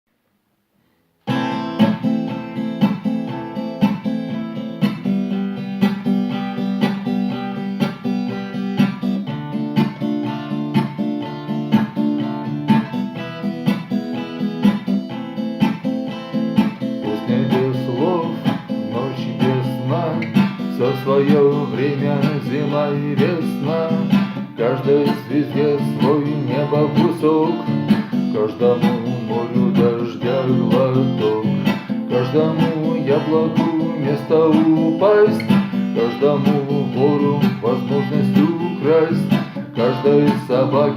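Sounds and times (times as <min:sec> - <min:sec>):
acoustic guitar strumming chords: 0:01.2 - 0:40.9.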